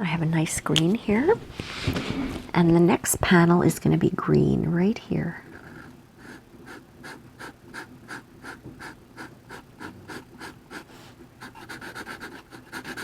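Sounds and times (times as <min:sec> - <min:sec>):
marker scratching on paper: 0:06.2 - 0:13.0.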